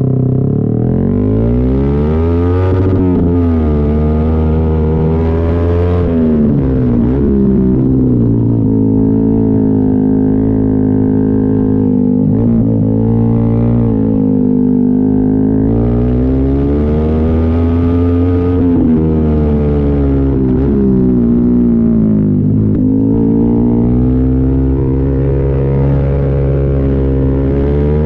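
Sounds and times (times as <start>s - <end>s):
motorcycle engine droning: 0.0s - 28.0s.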